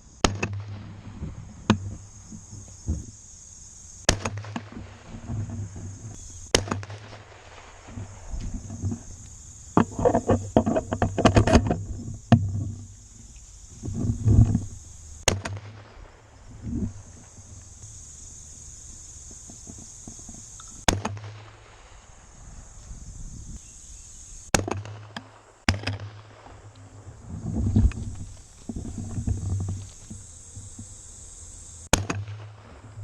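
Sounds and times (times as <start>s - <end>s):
shotgun cracks: 0.2s - 0.9s, 4.1s - 4.8s, 6.5s - 7.4s, 15.3s - 16.0s, 20.9s - 21.6s
knocks and rustling: 7.8s - 15.6s, 27.2s - 31.0s.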